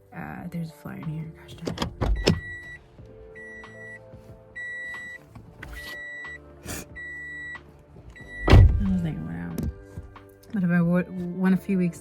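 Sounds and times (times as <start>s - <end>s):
car warning chime beeping: 2.1s - 9.5s.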